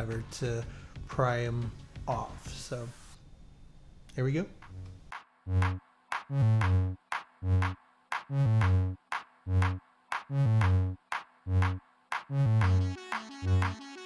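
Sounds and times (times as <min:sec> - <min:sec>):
drum machine beat: 0:00.0 - 0:02.7, 0:04.6 - 0:14.0
synth bass notes: 0:04.6 - 0:14.0.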